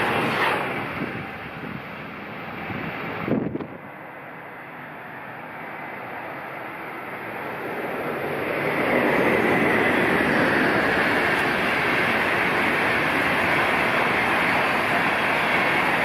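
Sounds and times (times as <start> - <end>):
high-speed train passing: 0.0 - 16.0.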